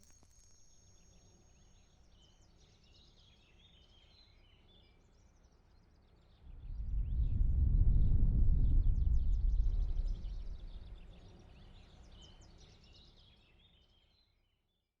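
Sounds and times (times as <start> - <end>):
deep low rumble: 6.5 - 11.2.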